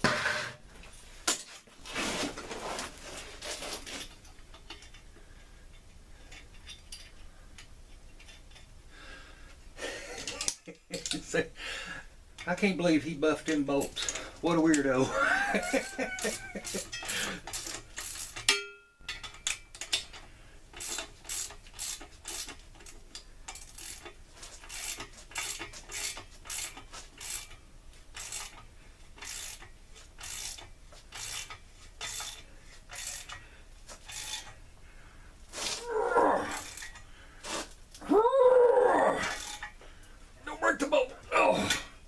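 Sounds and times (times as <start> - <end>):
ratchet wrench clicking: 16.3 - 20.2, 20.8 - 33.4, 34.0 - 34.6, 36.6 - 37.0, 39.4 - 39.7.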